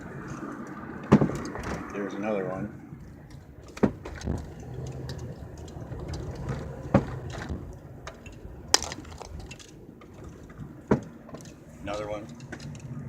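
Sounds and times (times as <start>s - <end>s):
low rumble of moving car: 0.0s - 13.0s
sharp pops from car suspension: 1.0s - 1.8s, 3.6s - 9.5s.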